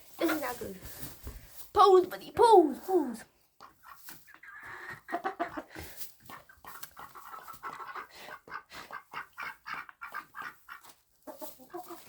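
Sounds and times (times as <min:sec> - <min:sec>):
ducks quacking: 0:03.6 - 0:12.0.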